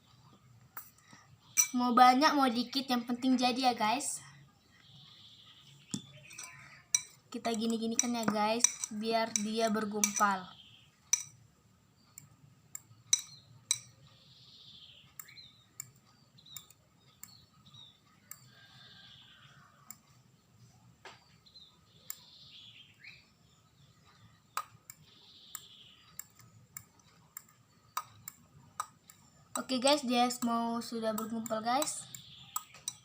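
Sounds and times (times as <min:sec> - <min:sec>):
fork tapping container: 0:05.9 - 0:10.4, 0:11.1 - 0:11.4, 0:13.1 - 0:13.9.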